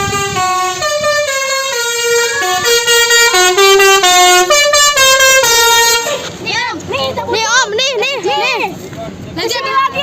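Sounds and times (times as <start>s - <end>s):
musical bus horn tune: 0.0s - 6.3s.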